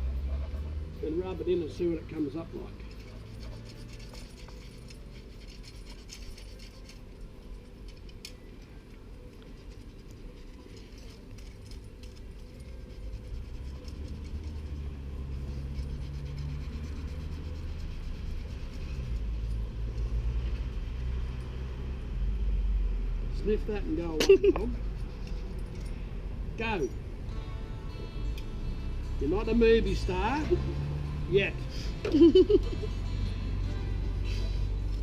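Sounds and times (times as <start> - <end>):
vehicle engine rumble: 0.0 - 35.0
light scratching: 2.4 - 20.7.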